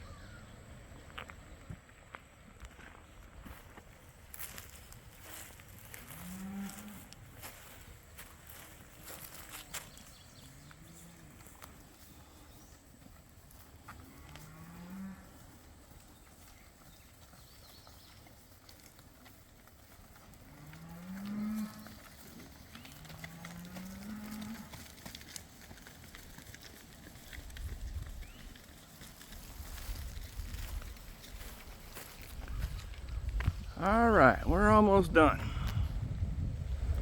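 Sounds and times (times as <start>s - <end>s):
cattle mooing: 20.6s - 22.0s, 23.0s - 24.8s.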